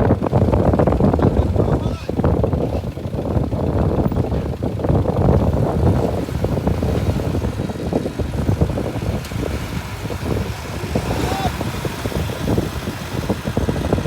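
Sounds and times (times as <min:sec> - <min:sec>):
bulldozer diesel engine rumbling: 0:00.0 - 0:14.0.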